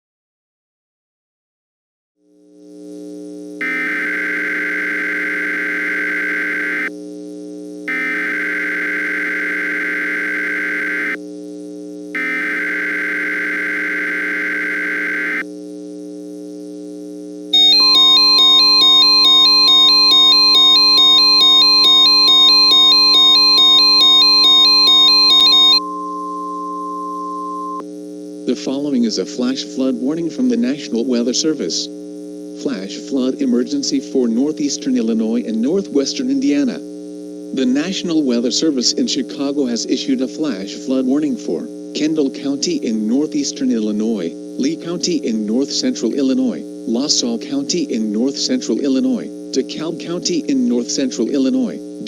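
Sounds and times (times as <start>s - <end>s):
digital header data bursts: 3.6s - 6.9s, 7.9s - 11.2s, 12.2s - 15.4s, 17.6s - 27.8s
steady single tone: 3.6s - 6.9s, 7.9s - 11.2s, 12.2s - 15.4s, 17.6s - 27.8s
synth drone: 3.6s - 6.9s, 7.9s - 11.2s, 19.3s - 27.8s
warbling multi-tone alarm: 3.6s - 6.9s, 7.9s - 11.2s, 12.2s - 15.4s, 17.6s - 27.8s.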